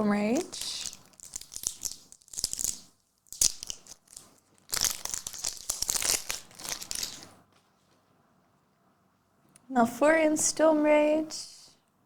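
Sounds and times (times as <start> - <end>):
foil wrapper crinkling and tearing: 0.3 - 7.4.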